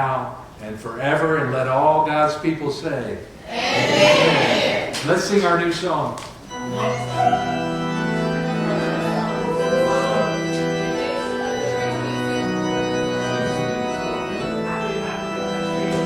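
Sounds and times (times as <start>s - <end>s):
organ playing held chords: 6.4s - 16.0s.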